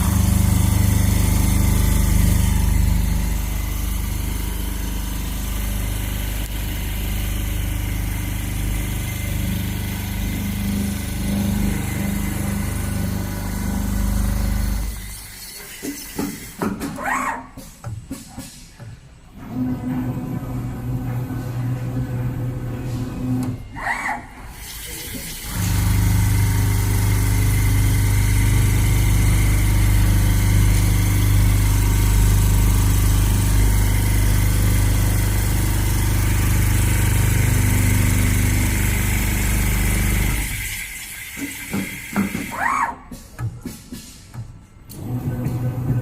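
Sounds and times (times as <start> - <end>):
sewing machine humming: 0.0 - 15.2, 25.4 - 42.5.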